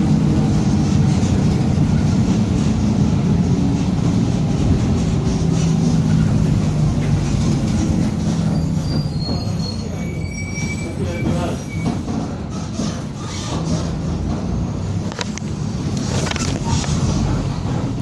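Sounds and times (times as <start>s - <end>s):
bus engine running: 0.0s - 18.0s
faint high squeal: 8.5s - 12.0s.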